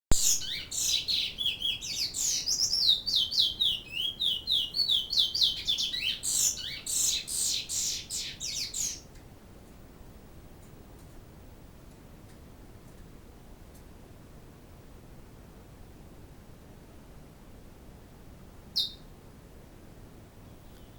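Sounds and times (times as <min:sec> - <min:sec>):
bird chirping and whistling: 0:00.2 - 0:09.0, 0:18.8 - 0:19.0.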